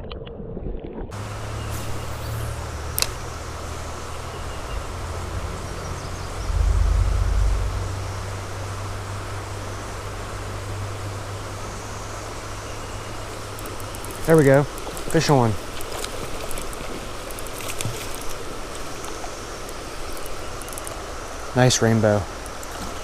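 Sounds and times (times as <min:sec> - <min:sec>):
creek water flowing: 0:01.1 - 0:23.0
wind rumble on microphone: 0:02.4 - 0:11.4
sharp click: 0:03.0 - 0:03.2.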